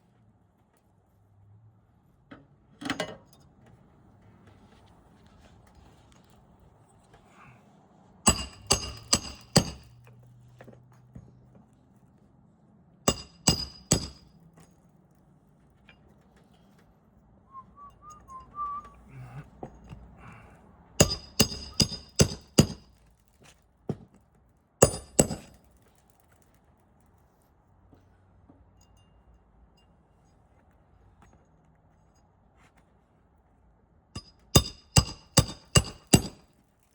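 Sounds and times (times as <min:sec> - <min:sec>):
hammer driving roofing nails: 0:08.3 - 0:09.9, 0:13.1 - 0:14.3, 0:21.0 - 0:22.9, 0:24.8 - 0:25.6, 0:34.2 - 0:36.5.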